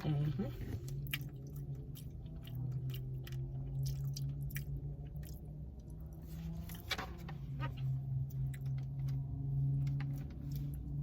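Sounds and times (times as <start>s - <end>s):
steady low hum: 0.0s - 11.0s
chewing food: 0.2s - 6.2s.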